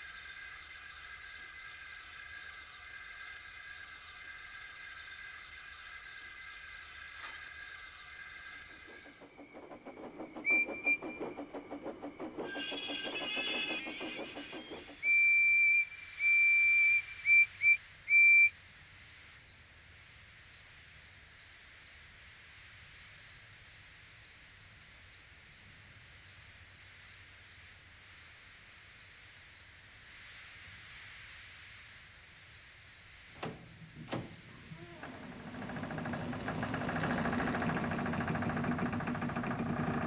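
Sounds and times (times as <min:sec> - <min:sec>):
cricket chirping: 0:00.0 - 0:40.0
steam locomotive whistle: 0:12.4 - 0:18.5
knocks: 0:33.4 - 0:40.0.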